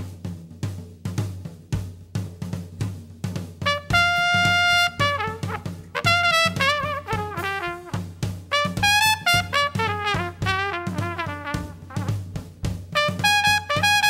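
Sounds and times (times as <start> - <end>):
drum kit swing beat: 0.0 - 14.0
brass section playing: 3.6 - 12.3, 12.9 - 14.0.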